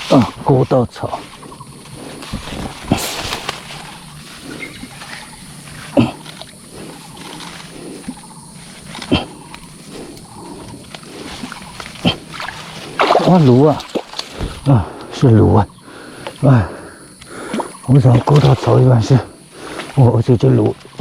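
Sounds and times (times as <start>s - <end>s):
water splashing and sloshing: 1.1s - 14.7s, 17.2s - 21.0s
sharp splashes: 11.4s - 14.5s, 17.5s - 19.1s.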